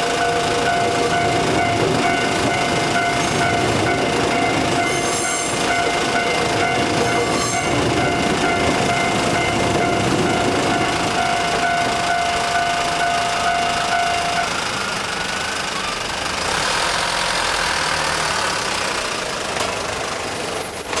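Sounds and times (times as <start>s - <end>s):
level-crossing warning bell: 0.0s - 16.1s
road vehicle engines: 0.0s - 21.0s.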